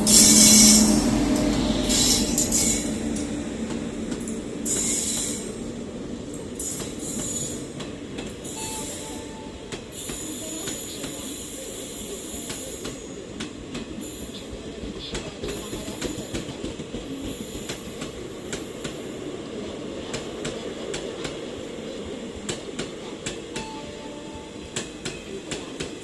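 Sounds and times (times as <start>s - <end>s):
train rumble: 0.0s - 26.0s.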